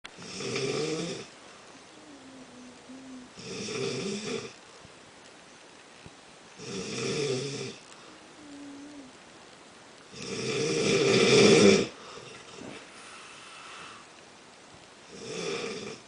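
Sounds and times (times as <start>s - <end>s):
soft hum: 0.1s - 16.0s
man snoring: 0.2s - 1.3s, 2.0s - 4.6s, 6.6s - 7.8s, 8.4s - 9.1s, 10.1s - 12.0s, 15.1s - 16.0s.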